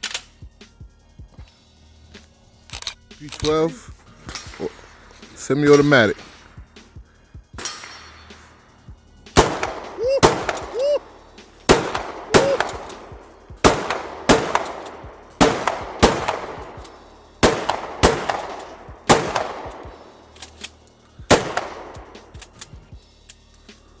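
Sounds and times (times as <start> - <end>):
shotgun shots: 9.4 - 20.6, 21.3 - 22.6.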